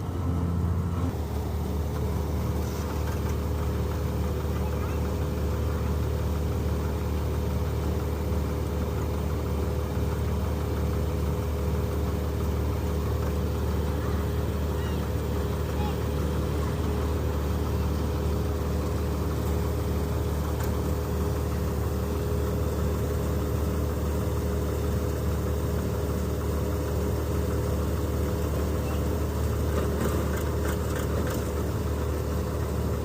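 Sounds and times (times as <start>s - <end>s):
combine harvester engine hum: 0.0s - 33.0s.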